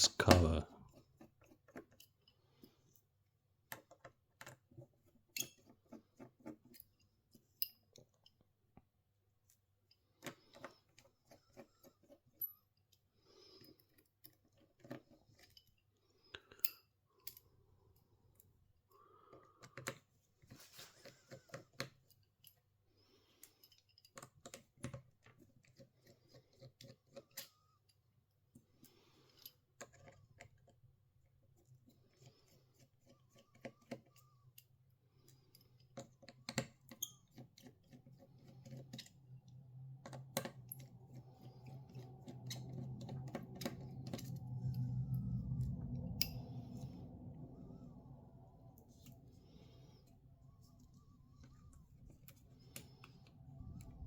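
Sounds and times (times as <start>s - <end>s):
tools clicking and scraping phone: 23.8s - 27.7s, 31.5s - 44.4s
faint low hum: 38.1s - 54.0s.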